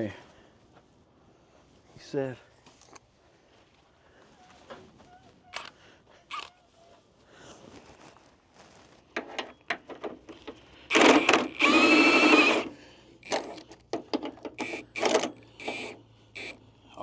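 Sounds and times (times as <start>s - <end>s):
power tool running in bursts: 10.9s - 13.6s, 14.6s - 16.6s.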